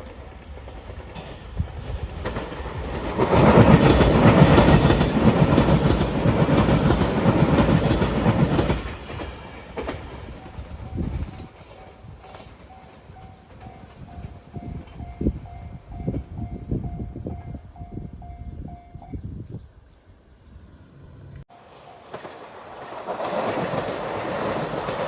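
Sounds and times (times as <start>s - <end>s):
electric train passing: 0.0s - 19.4s, 20.6s - 25.0s.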